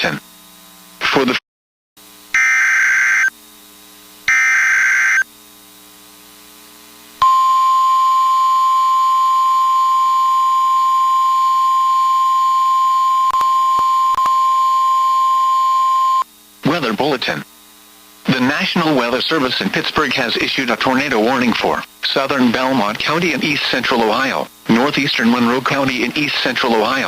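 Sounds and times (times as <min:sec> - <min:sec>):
steady alarm tone: 0:02.3 - 0:03.4, 0:04.3 - 0:05.3, 0:07.2 - 0:16.2
digital data bursts: 0:02.4 - 0:03.3, 0:04.3 - 0:05.2.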